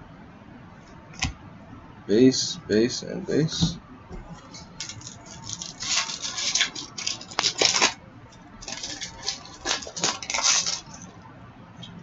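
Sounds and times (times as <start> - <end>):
trading cards rustling and sliding: 4.4 - 8.0, 8.6 - 11.1.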